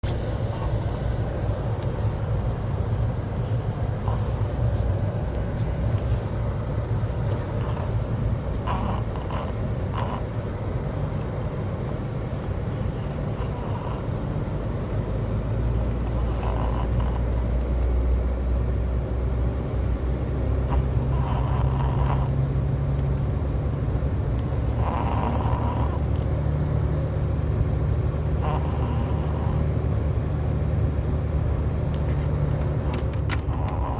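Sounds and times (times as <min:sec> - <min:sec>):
steady low rumble: 0:00.0 - 0:33.9
small dog snoring: 0:00.1 - 0:01.9, 0:02.9 - 0:04.9, 0:06.8 - 0:10.5, 0:12.3 - 0:14.5, 0:15.6 - 0:17.6, 0:20.5 - 0:22.7, 0:24.4 - 0:26.2, 0:28.1 - 0:30.0, 0:32.0 - 0:33.9.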